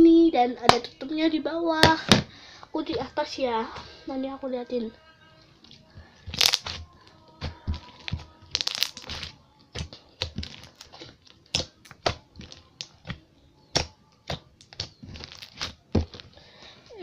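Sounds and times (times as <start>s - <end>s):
crackly slime squelches: 5.5s - 17.0s
slime clicks and pops: 6.3s - 6.8s, 8.5s - 9.3s.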